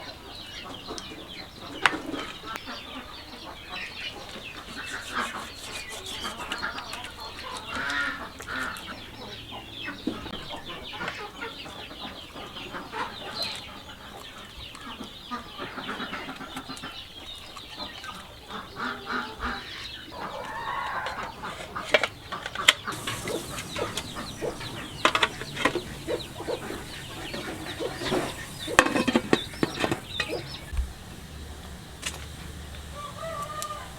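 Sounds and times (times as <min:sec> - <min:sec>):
chickens clucking: 0:00.4 - 0:33.9
sharp clicks and knocks: 0:22.9 - 0:32.9.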